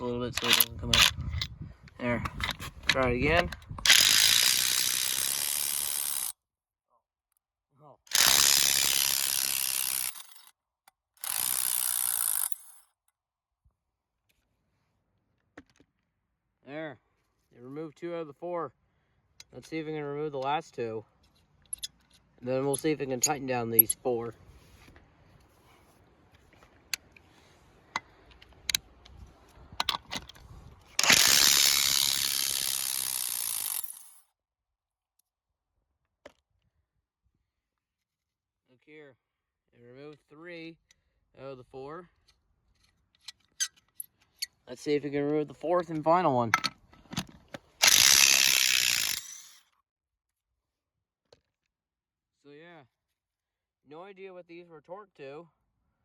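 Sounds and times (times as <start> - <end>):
impact wrench hammering: 8.1 - 10.3, 47.8 - 49.5.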